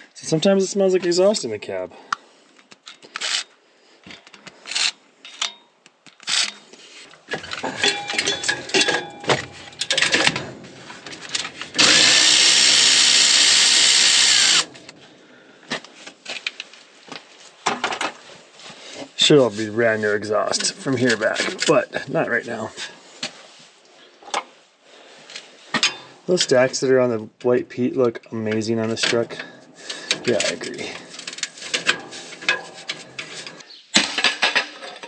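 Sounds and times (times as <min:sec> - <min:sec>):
tool clicks and clanks: 0:04.1 - 0:06.6, 0:07.3 - 0:15.0, 0:28.8 - 0:35.0
power tool running in spurts: 0:11.7 - 0:14.8.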